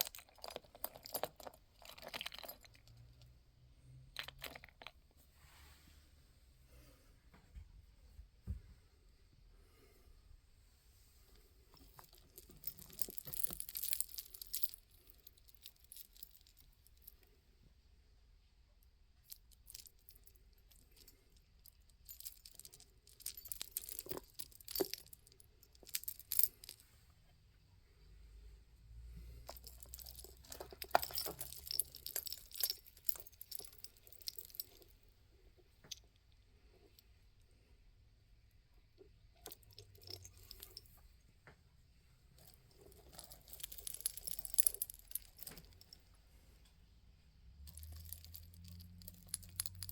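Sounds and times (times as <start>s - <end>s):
beads clicking and jingling: 0.0s - 3.2s, 11.8s - 17.1s, 19.2s - 26.8s, 29.4s - 34.9s, 39.4s - 41.0s, 42.4s - 46.0s, 47.6s - 49.9s.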